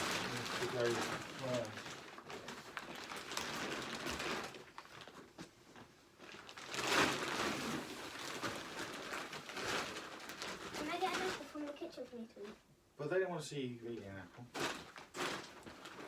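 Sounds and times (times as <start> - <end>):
nylon tent rustling: 0.0 - 12.0, 14.5 - 16.0.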